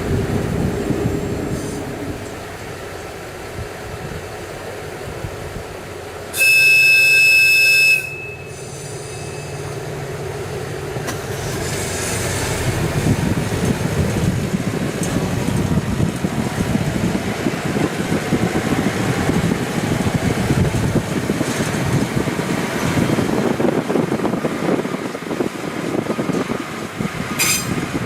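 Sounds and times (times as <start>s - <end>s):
high whistle blast: 6.4s - 9.6s.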